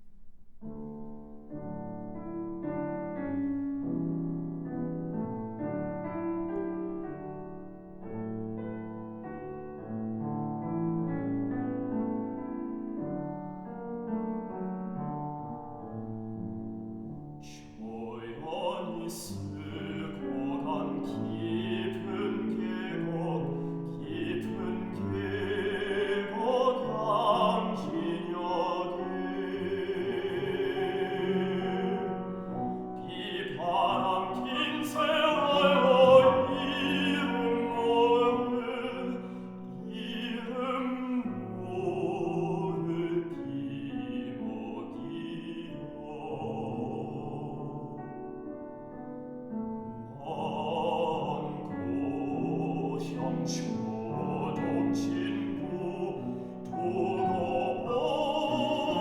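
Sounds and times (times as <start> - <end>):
classical piano: 0.0 - 59.0
baritone man singing: 17.4 - 48.4, 50.0 - 59.0.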